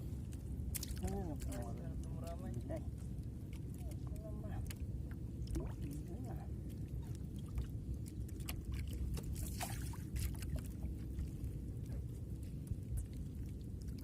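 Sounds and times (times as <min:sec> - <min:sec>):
water lapping against boat hull: 0:00.0 - 0:14.0
wind rumble on microphone: 0:00.0 - 0:14.0
small splashes and clicks: 0:00.2 - 0:14.0.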